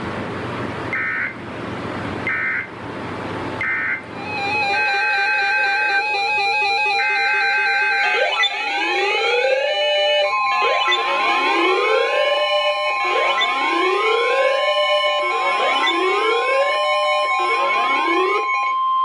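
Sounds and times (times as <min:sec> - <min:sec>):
steady alert tone: 0:04.2 - 0:18.8
repeating electronic music pattern: 0:04.2 - 0:19.0
whooping alarm sweeping upward: 0:04.2 - 0:19.0.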